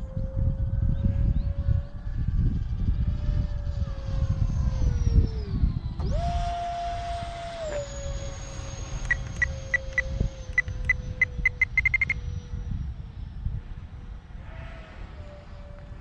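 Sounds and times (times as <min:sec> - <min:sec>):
electric ducted fans whining: 0:00.0 - 0:16.0
wind rumble: 0:00.0 - 0:16.0
short electronic beeps: 0:09.0 - 0:12.2.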